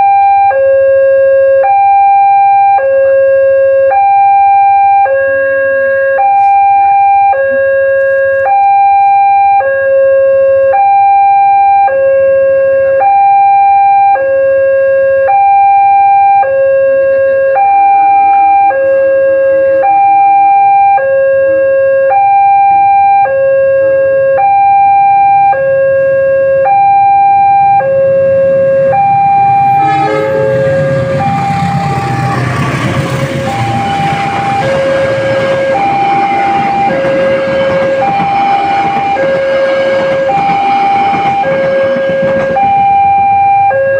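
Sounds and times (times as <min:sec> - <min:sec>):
level-crossing warning siren: 0:00.0 - 0:43.9
low rumbling noise: 0:27.4 - 0:43.9.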